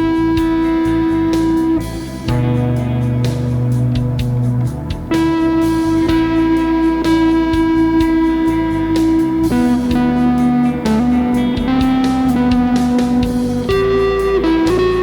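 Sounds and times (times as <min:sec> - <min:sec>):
ambient rock backing track with drums: 0:00.0 - 0:15.0
electric guitar sustained lead notes: 0:00.0 - 0:15.0.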